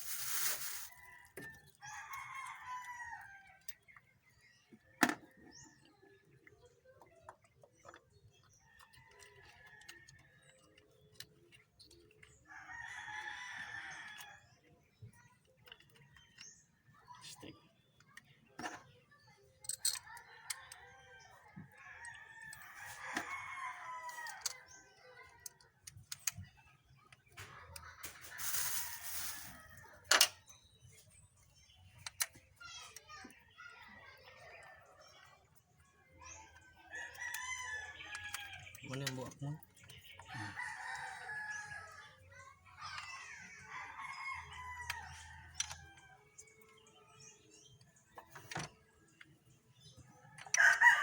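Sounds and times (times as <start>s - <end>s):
rooster crowing: 50.5s - 51.0s.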